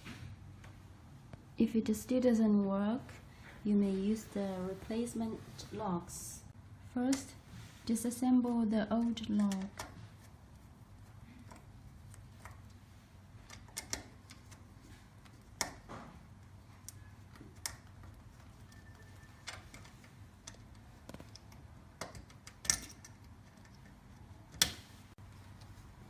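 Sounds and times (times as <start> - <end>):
tools and lock parts clicking: 13.4 - 15.9, 16.8 - 24.8.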